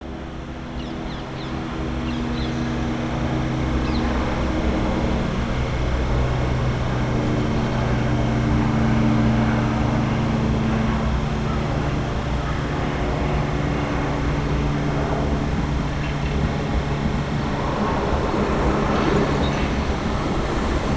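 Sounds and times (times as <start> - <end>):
electric train hum: 0.2 - 20.9
train rolling noise: 15.2 - 20.9.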